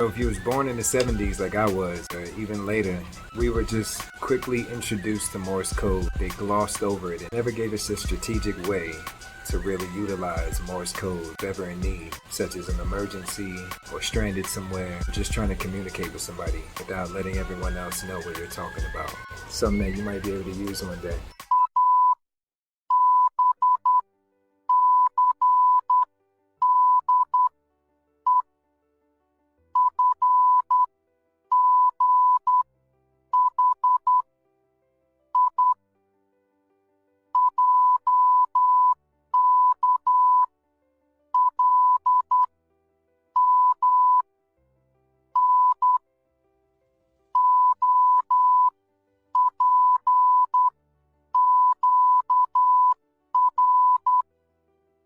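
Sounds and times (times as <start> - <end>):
morse code beeps: 21.4 - 22.2, 22.9 - 24.0, 24.7 - 27.5, 29.8 - 30.9, 31.5 - 32.7, 33.4 - 34.2, 35.4 - 35.8, 37.4 - 40.5, 41.4 - 42.5, 43.4 - 44.2, 45.4 - 46.0, 47.4 - 48.7, 49.4 - 50.7, 51.4 - 54.2.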